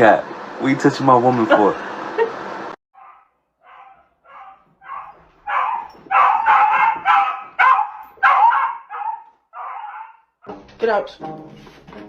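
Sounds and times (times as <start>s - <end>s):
dog barking: 3.0s - 10.4s.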